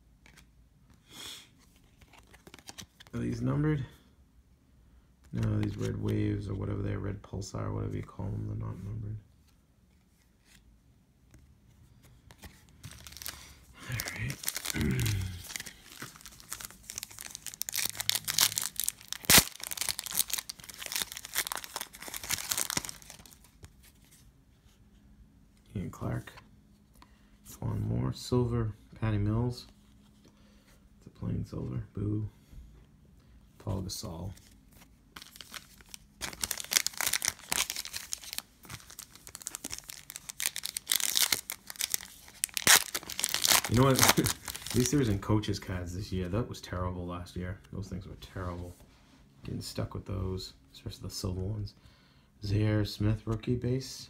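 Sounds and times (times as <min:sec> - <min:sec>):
wrapper tearing and crinkling: 0:12.8 - 0:23.5, 0:35.2 - 0:45.1.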